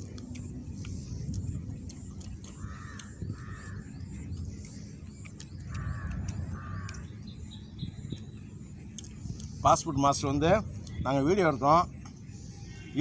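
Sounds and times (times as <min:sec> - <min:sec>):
crow cawing: 0:02.5 - 0:04.0, 0:05.6 - 0:07.1.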